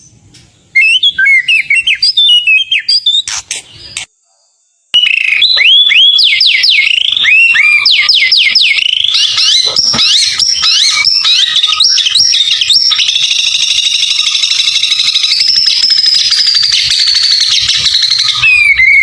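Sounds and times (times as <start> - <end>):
bird singing whistles and trills: 0.0 - 4.1, 5.0 - 19.0.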